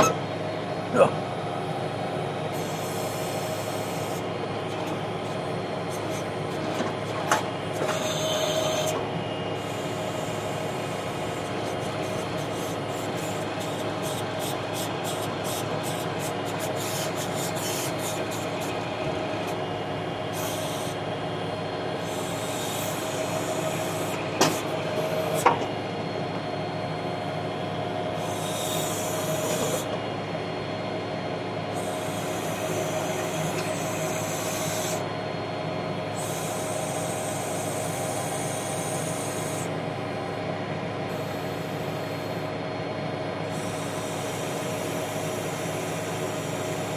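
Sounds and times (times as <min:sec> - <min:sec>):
tractor engine running: 0:00.0 - 0:38.5
hydraulic whine: 0:00.0 - 0:46.9
hydraulic hiss: 0:12.4 - 0:18.6, 0:20.4 - 0:21.0, 0:22.0 - 0:25.4, 0:28.2 - 0:29.9, 0:31.8 - 0:35.0, 0:36.2 - 0:39.7, 0:43.5 - 0:45.7.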